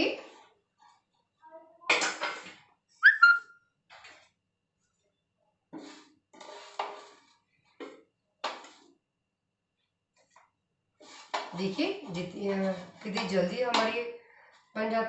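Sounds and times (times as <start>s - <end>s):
metal spatula scraping griddle: 5.8s - 7.8s, 11.0s - 15.0s.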